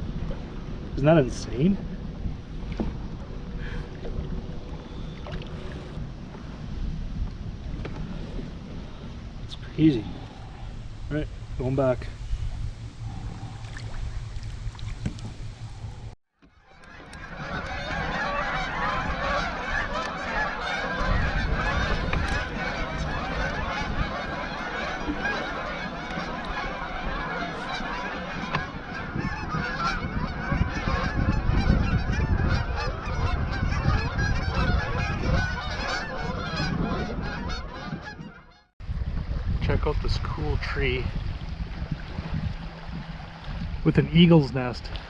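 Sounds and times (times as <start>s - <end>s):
low rumble: 0.0s - 16.2s
geese honking: 15.6s - 38.7s.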